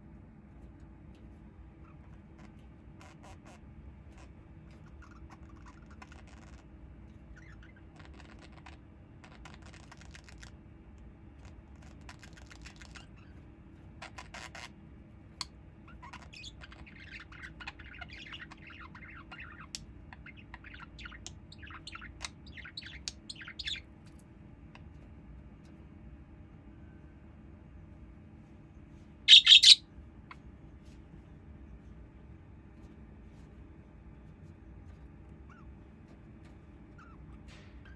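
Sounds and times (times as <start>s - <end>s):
steady low hum: 0.0s - 37.9s
small bird chirping: 4.7s - 10.5s, 15.9s - 24.0s, 29.3s - 29.8s, 36.9s - 37.9s.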